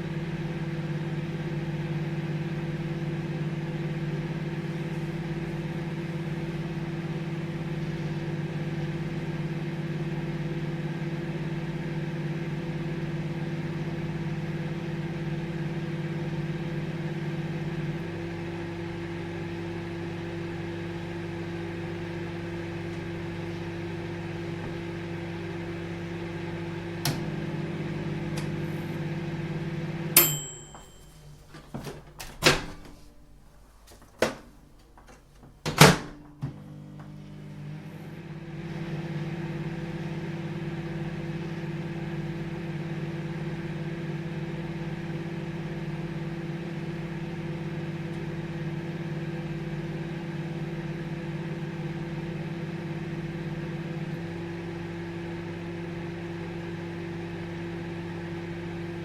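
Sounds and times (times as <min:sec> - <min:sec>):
microwave oven humming: 0:00.0 - 0:59.0
microwave click: 0:27.0 - 0:27.4, 0:28.2 - 0:28.6, 0:30.2 - 0:31.0.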